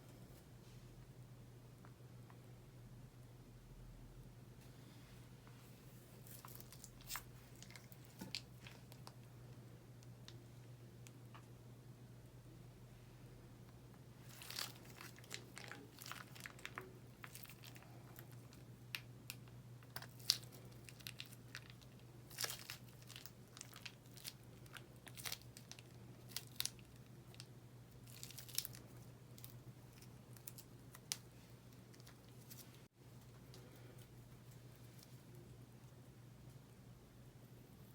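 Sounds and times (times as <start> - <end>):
slime crackling and popping: 14.2 - 32.7.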